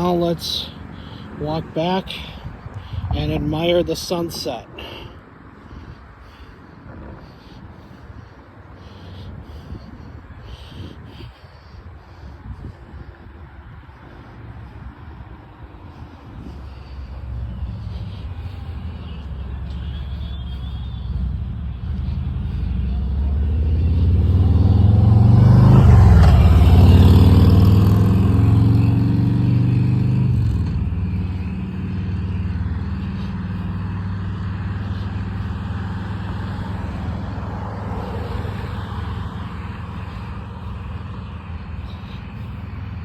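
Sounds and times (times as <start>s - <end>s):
steady low rumble: 0.6s - 24.6s, 30.3s - 43.0s
car driving past: 19.1s - 43.0s.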